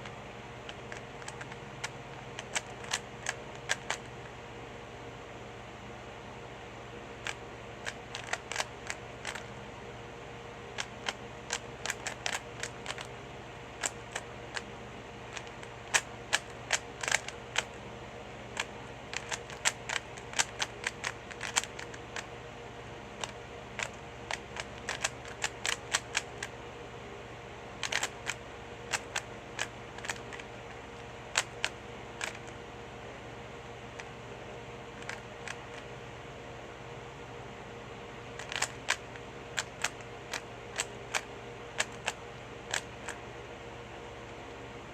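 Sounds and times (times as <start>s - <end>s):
puzzle cube layers clicking: 0.0s - 4.2s, 7.2s - 9.6s, 10.7s - 13.1s, 13.8s - 14.7s, 15.3s - 17.8s, 18.5s - 22.3s, 23.2s - 26.5s, 27.8s - 32.6s, 34.9s - 35.9s, 38.4s - 43.2s
steady low hum: 0.0s - 44.9s.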